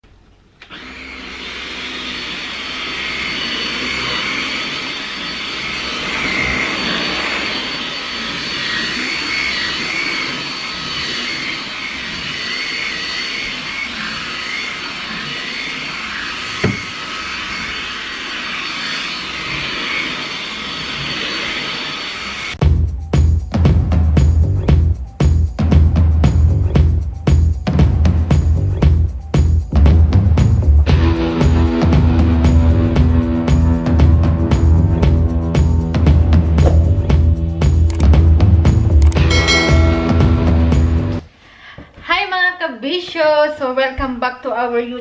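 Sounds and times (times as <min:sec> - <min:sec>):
vacuum cleaner motor whine: 0:00.6 - 0:22.6
sharp knock: 0:36.6 - 0:37.3.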